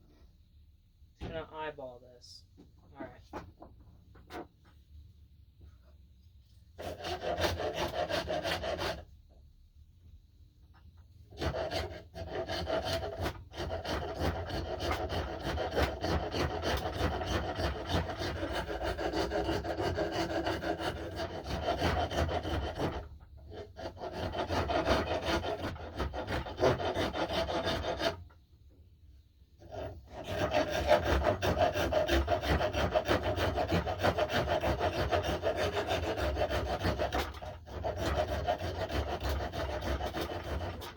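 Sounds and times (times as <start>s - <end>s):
hand tool scraping wood: 6.8s - 9.0s, 11.3s - 28.4s, 29.6s - 40.9s.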